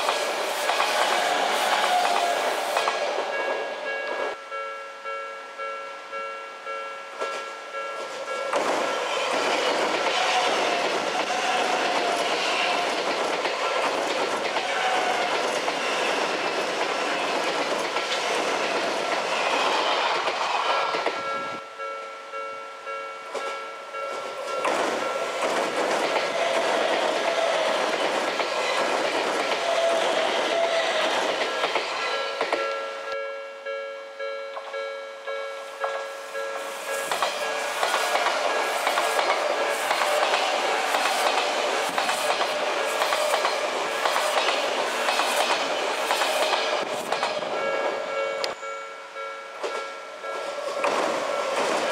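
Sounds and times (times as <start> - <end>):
train wheels rumbling and clacking: 0.0 - 4.4, 7.2 - 21.6, 23.3 - 33.1, 35.8 - 48.6, 49.6 - 51.9
level-crossing warning bell: 2.9 - 12.0, 20.7 - 27.3, 31.4 - 41.8, 46.4 - 51.9.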